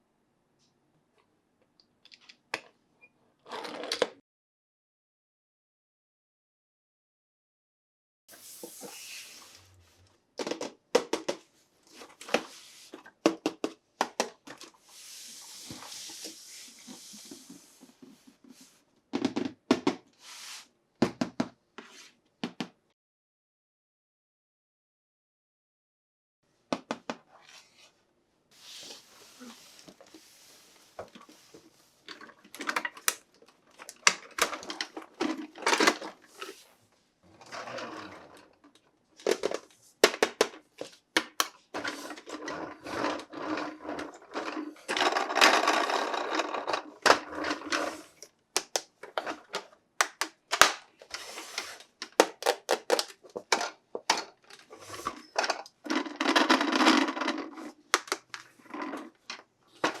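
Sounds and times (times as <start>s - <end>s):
plastic toys clicking and tapping: 48.6s - 50.8s, 52.0s - 54.7s, 55.4s - 58.4s.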